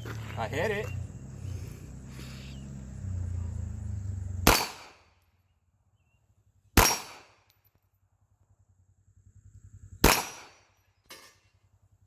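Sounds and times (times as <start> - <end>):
pistol shots with echo: 4.4 - 5.2, 6.8 - 7.5, 10.0 - 10.7.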